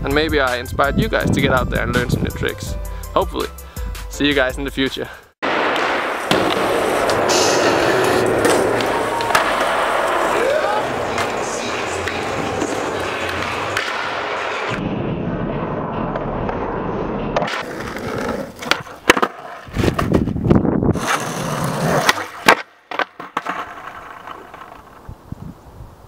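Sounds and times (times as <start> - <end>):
skateboard rolling: 5.4 - 25.4
skateboard clacking on ground: 5.5 - 14.8, 17.4 - 20.4, 21.8 - 25.1.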